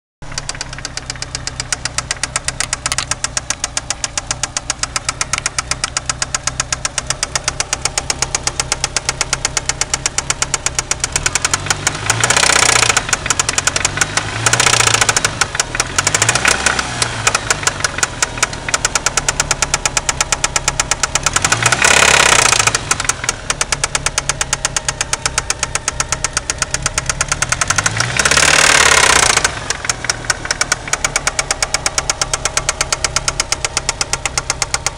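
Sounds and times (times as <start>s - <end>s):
car engine idling with rod knock: 0.2s - 34.9s.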